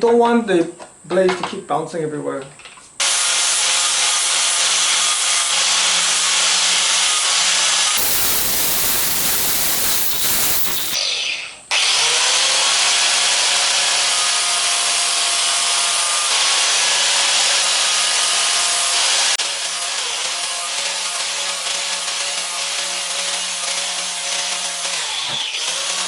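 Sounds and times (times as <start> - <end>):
electric grinder motor hum: 8.0 - 11.0.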